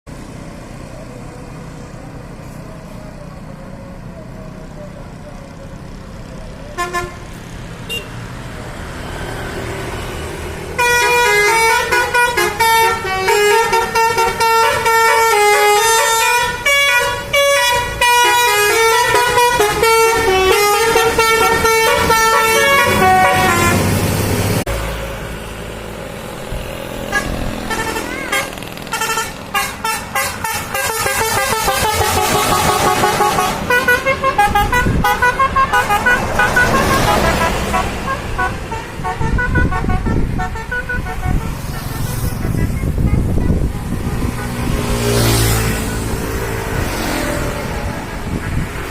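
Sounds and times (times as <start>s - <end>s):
multi-tone musical bus horn: 6.6s - 8.2s, 10.6s - 24.6s, 26.9s - 48.9s.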